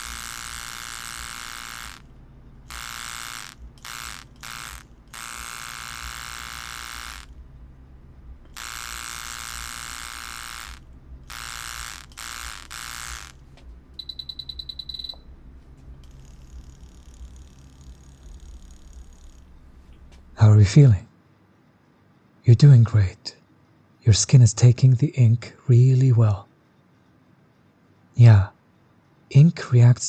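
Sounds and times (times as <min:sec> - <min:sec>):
tattoo machine buzzing: 0:00.0 - 0:07.4, 0:08.4 - 0:15.3, 0:16.0 - 0:19.5
rapid pulsing high-pitched tone: 0:00.0 - 0:07.5, 0:08.5 - 0:13.4, 0:14.0 - 0:15.3, 0:16.0 - 0:19.6.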